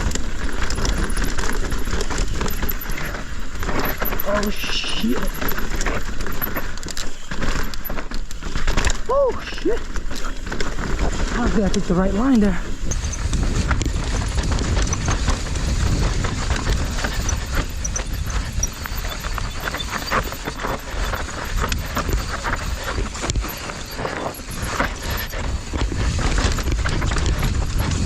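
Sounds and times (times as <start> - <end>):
bike rattling: 0.0 - 28.0
tyres crunching over dirt and rocks: 0.0 - 28.0
wind on microphone: 12.4 - 28.0.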